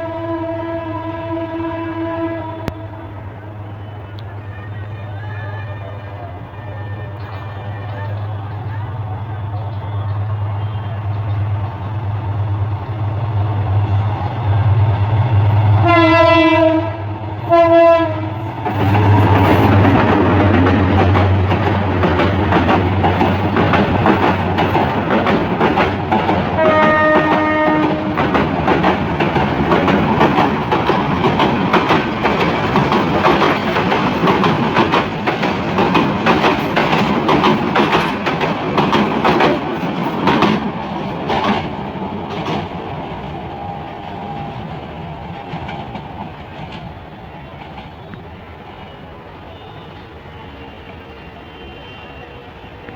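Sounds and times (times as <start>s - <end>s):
locomotive horn blasts: 0.0s - 6.0s, 15.7s - 19.4s, 26.6s - 28.3s
locomotive engine hum: 0.0s - 51.6s
train passing rumble: 0.0s - 52.9s.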